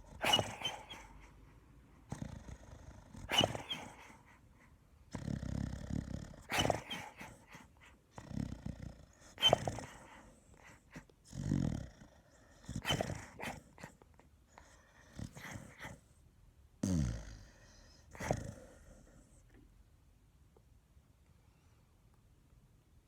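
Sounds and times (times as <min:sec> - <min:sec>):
pet snoring: 0:00.0 - 0:01.3, 0:02.0 - 0:04.3, 0:05.1 - 0:14.0, 0:16.8 - 0:19.4.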